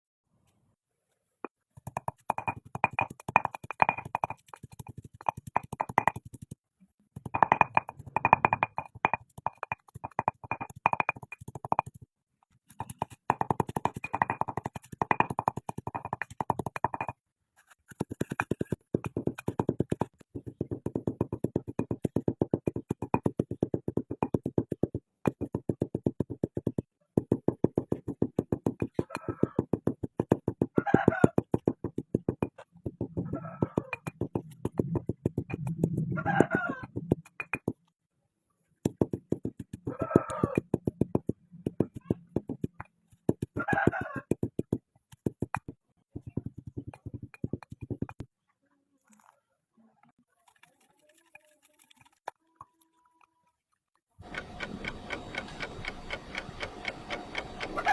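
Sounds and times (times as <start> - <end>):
rapid clicks: 54.2 - 57.9.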